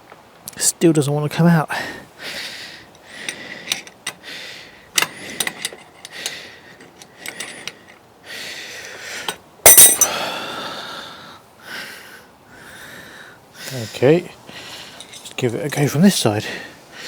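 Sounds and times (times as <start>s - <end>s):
metal tools clinking: 3.2s - 4.2s, 5.0s - 8.0s, 9.3s - 10.2s, 14.9s - 15.9s
loud metal clang ringing: 9.7s - 10.2s.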